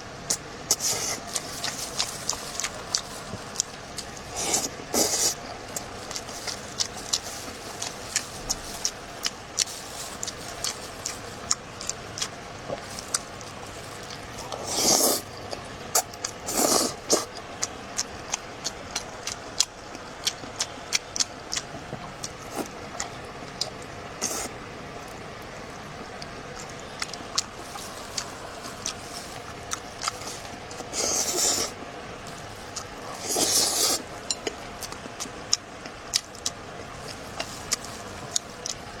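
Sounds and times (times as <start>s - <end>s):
mouth slurping: 4.2s - 7.9s, 15.9s - 17.4s, 27.0s - 31.8s, 32.8s - 34.1s
wet mouth chewing clicks: 29.6s - 30.2s.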